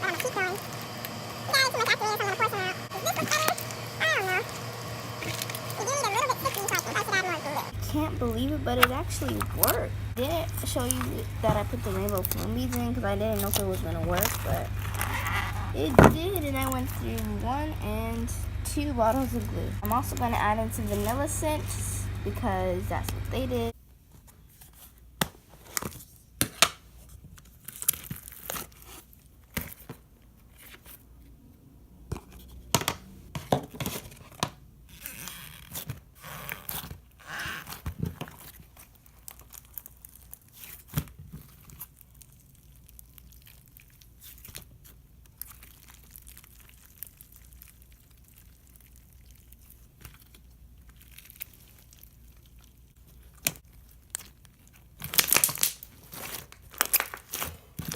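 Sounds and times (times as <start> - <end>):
slime crackling and popping: 3.1 - 17.3, 37.7 - 57.9.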